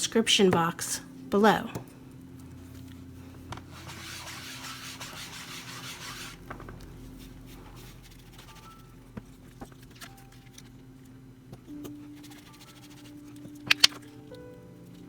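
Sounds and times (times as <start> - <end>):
sponge rubbing on card: 3.8 - 6.4.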